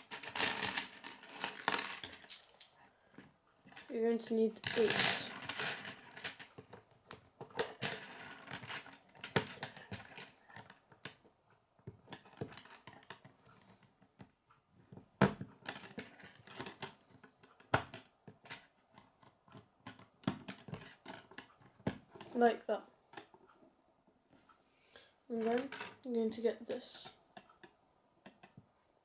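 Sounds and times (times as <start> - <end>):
plastic pieces clicking and clattering: 0.0 - 2.7, 4.6 - 11.2, 25.4 - 26.0.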